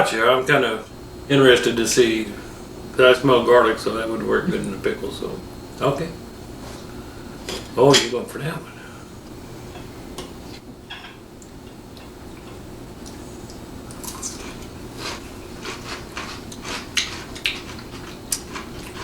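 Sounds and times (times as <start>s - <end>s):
steady low hum: 0.0s - 19.0s
crunchy chewing: 11.9s - 19.0s.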